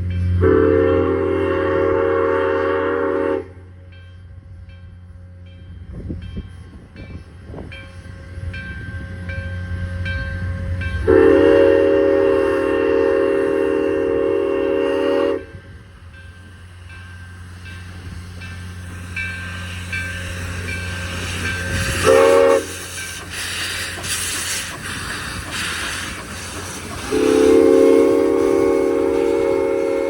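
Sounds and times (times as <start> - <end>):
locomotive whistle chord: 0.0 - 3.8, 9.8 - 15.8, 19.2 - 23.0, 27.0 - 30.0.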